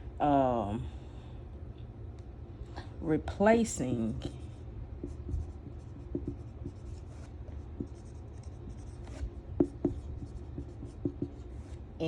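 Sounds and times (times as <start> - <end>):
low steady hum: 0.0 - 12.0
pen scratching on paper: 5.0 - 11.8.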